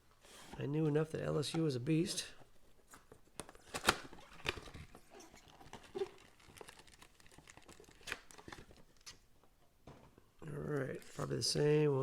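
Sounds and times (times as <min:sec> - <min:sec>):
wrapper crinkling: 0:03.6 - 0:09.1.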